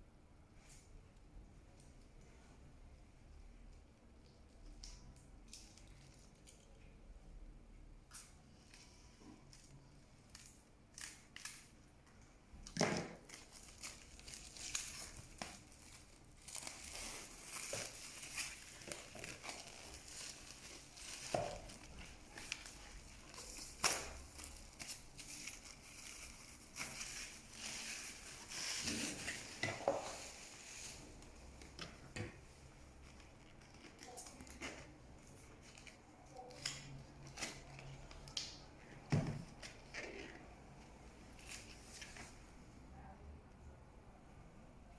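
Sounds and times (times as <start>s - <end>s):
plastic and paper crinkling: 13.0s - 31.7s.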